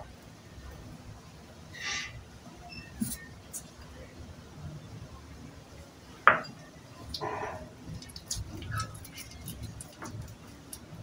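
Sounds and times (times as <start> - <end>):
batter being stirred and scraped: 7.2 - 11.0.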